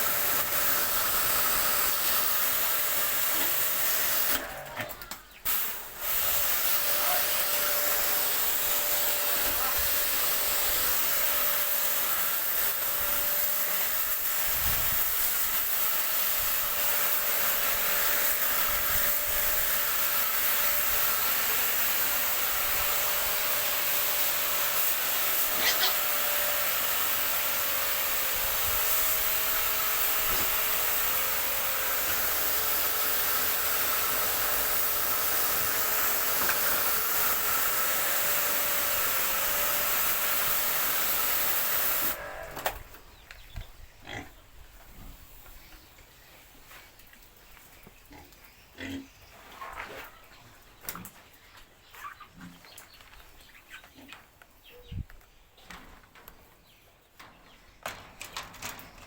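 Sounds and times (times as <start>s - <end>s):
water spraying hiss: 0.0s - 4.4s, 14.8s - 42.6s.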